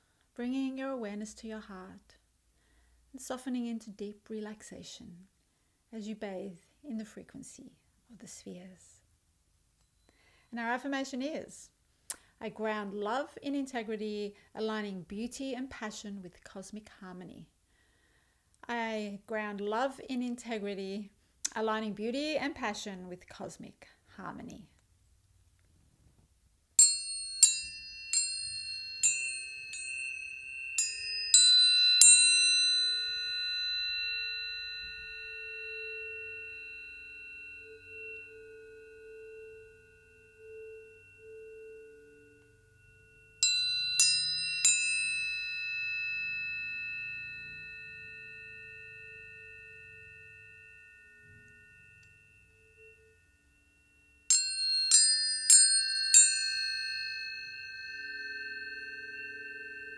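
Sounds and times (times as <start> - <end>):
tuning forks ringing: 26.8 - 59.9.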